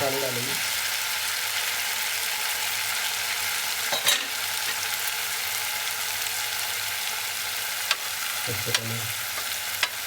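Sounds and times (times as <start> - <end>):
food sizzling in a pan: 0.0 - 10.0.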